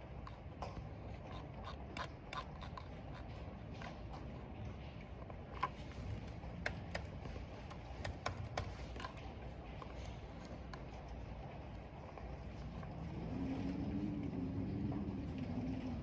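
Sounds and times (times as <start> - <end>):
wind and rain: 11.0 - 16.0.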